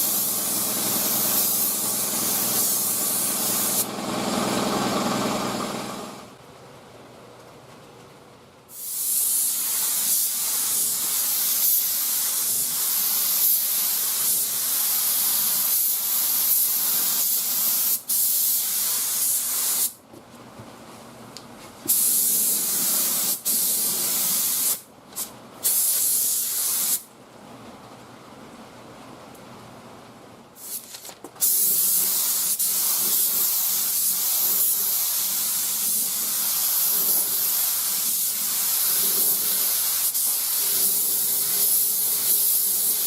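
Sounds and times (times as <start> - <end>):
air spray gun spraying: 0.0 - 5.7, 8.7 - 20.0, 21.9 - 27.1, 30.6 - 43.0.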